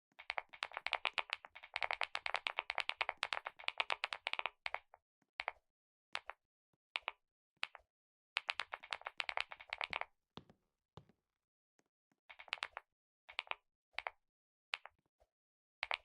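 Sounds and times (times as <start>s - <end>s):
typing on computer keyboard: 8.4s - 10.0s, 12.3s - 14.1s.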